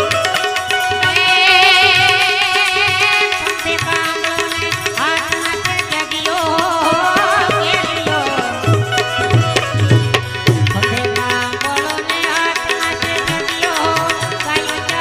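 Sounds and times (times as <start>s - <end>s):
tabla drumming: 0.0s - 15.0s.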